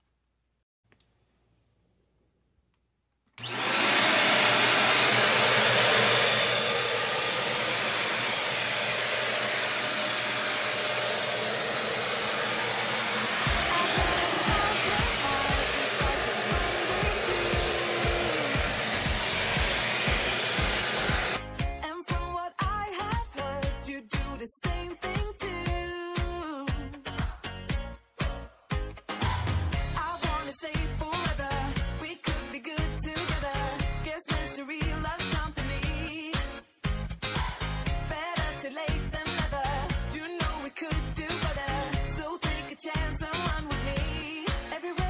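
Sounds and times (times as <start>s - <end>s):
vacuum cleaner motor whine: 3.4s - 21.4s.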